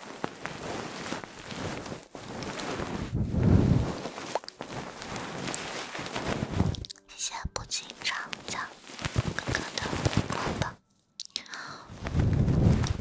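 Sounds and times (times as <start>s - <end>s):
close rustling and rubbing: 0.0s - 6.8s, 7.9s - 10.8s.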